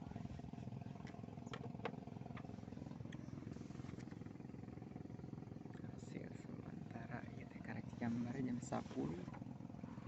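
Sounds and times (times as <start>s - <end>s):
small engine running: 0.1s - 10.0s.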